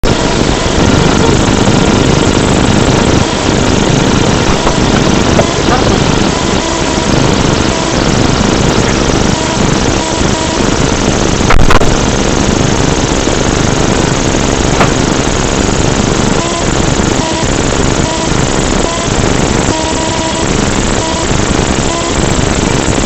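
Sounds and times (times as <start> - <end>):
car engine and road drone: 0.0 - 23.0
loud bump: 3.9 - 6.6, 14.7 - 15.4.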